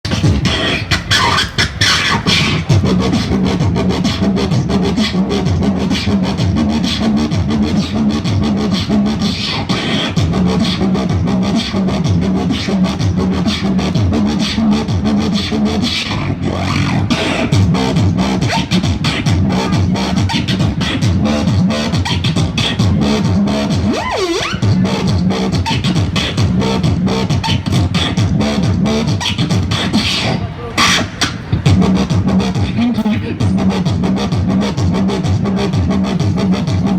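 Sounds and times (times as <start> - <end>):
girl beatboxing: 0.1 - 36.9
low hummed bass tone: 16.4 - 29.2.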